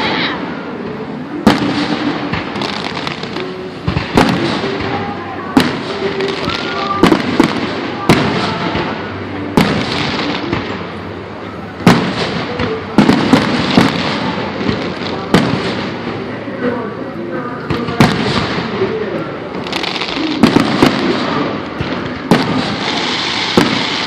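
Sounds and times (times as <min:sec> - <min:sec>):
fireworks bangs: 0:00.0 - 0:24.0
fireworks crackling: 0:00.0 - 0:24.0.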